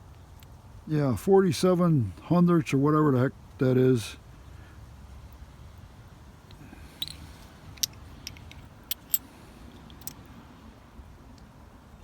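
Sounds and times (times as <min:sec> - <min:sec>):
metallic clicks and clinks: 0:06.5 - 0:10.2.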